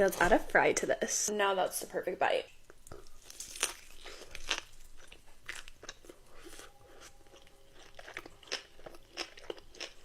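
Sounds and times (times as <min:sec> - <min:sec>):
crunching and chewing food: 0:02.6 - 0:10.0.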